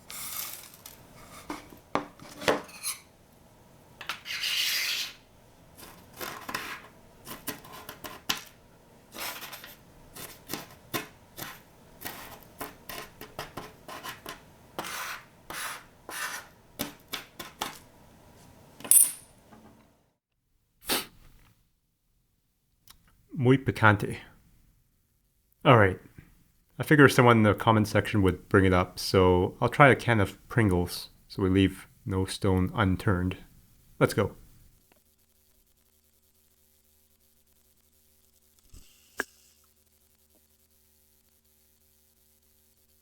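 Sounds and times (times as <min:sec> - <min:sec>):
utensil clinking and scraping dish: 0:00.0 - 0:03.1.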